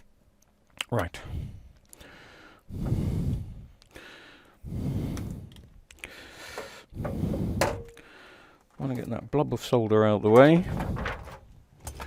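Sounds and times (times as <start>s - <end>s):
person breathing out heavily: 1.2s - 8.7s.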